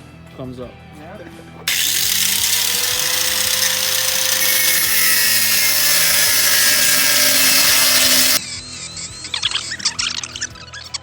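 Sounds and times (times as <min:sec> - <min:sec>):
angle grinder cutting metal: 0:01.7 - 0:08.4.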